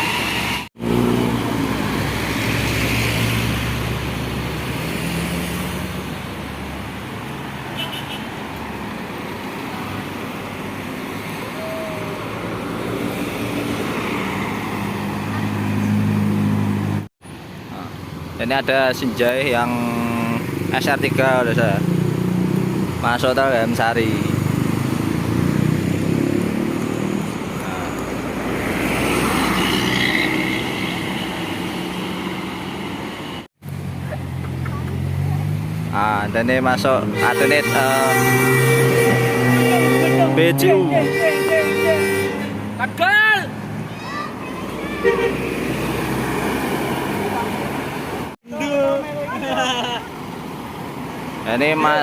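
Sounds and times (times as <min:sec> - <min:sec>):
passing vehicles: 0:00.0 - 0:52.0
bus driving past: 0:43.6 - 0:52.0.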